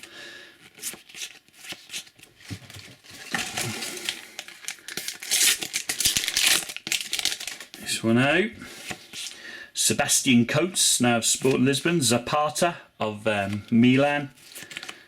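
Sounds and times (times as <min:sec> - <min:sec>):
wrapper tearing and crinkling: 0:03.1 - 0:07.8.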